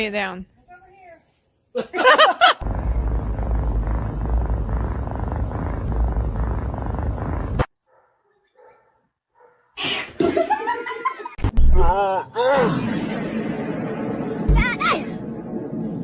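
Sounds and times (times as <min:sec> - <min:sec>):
cat purring loudly: 0:02.6 - 0:07.7
loud sound: 0:02.6 - 0:07.7, 0:12.6 - 0:16.0.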